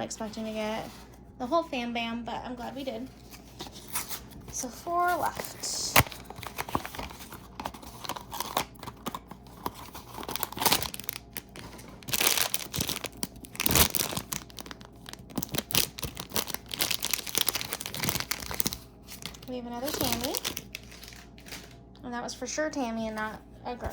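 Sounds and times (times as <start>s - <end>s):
packaging crinkling and tearing: 3.2s - 21.8s.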